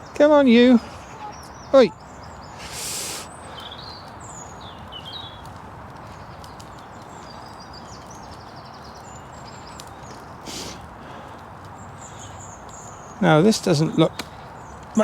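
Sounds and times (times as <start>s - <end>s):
outdoor hiss: 0.0s - 5.4s, 9.0s - 15.0s
faint footsteps on a path: 0.0s - 15.0s
songbirds chirping and trilling: 0.0s - 15.0s.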